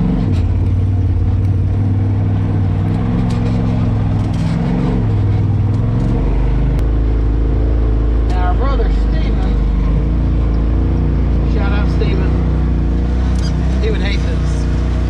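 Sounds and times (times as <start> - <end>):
off-road vehicle engine revving: 0.0 - 15.0.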